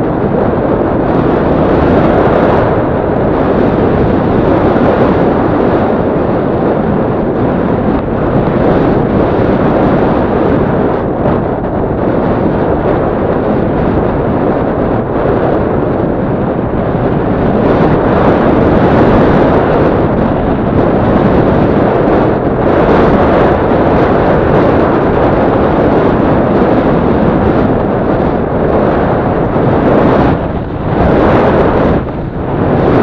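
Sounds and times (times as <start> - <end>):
wind buffeting microphone: 0.0 - 33.0
motorcycle engine running: 23.5 - 33.0.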